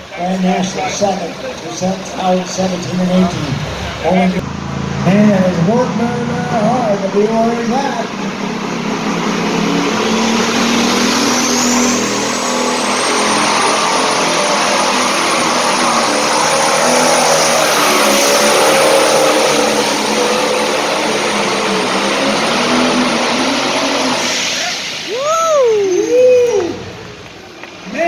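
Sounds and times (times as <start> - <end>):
diesel engine at full throttle: 0.0 - 28.0
high turbo whistle: 8.9 - 27.2.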